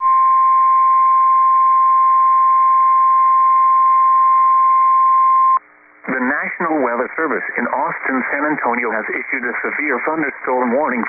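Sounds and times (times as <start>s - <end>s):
faint radio hiss: 5.6s - 11.0s.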